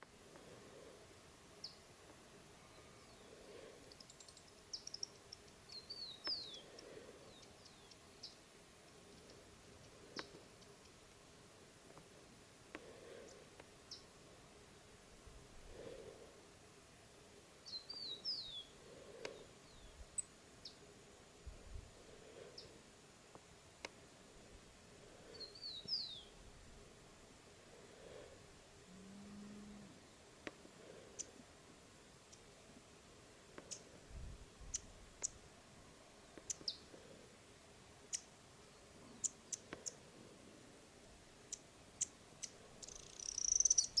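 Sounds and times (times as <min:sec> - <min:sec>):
background hiss: 0:00.0 - 0:44.0
bird chirps: 0:03.9 - 0:08.4, 0:17.6 - 0:18.7, 0:25.3 - 0:26.3, 0:36.4 - 0:36.9, 0:41.5 - 0:44.0
bird chirping and warbling: 0:42.8 - 0:44.0.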